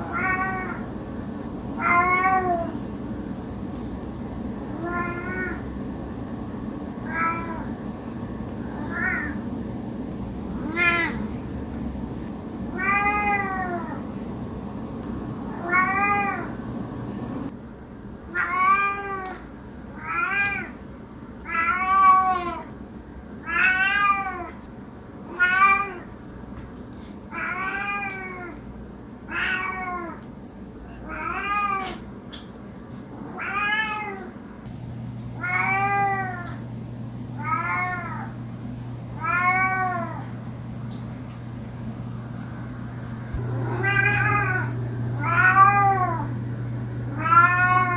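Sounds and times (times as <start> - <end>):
cat meowing: 0.1 - 0.8, 1.8 - 2.7, 4.8 - 5.6, 7.0 - 7.8, 8.8 - 9.4, 10.6 - 11.3, 12.7 - 14.0, 15.5 - 16.6, 29.3 - 30.2, 33.2 - 34.3, 37.4 - 38.3, 43.4 - 46.4, 47.1 - 47.9.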